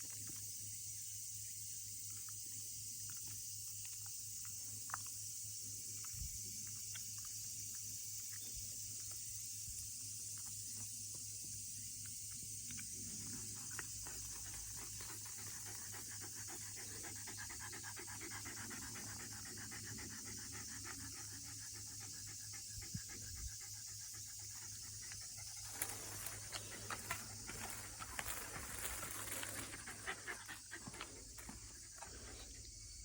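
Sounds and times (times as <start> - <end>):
dog panting: 13.1 - 33.0.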